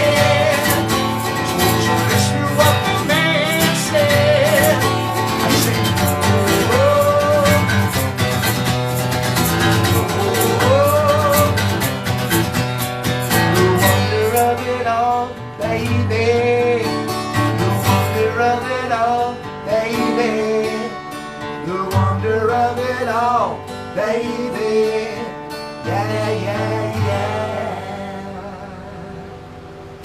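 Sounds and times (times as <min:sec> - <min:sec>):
person singing: 0:00.0 - 0:12.1, 0:21.6 - 0:29.6
acoustic guitar: 0:00.0 - 0:30.0.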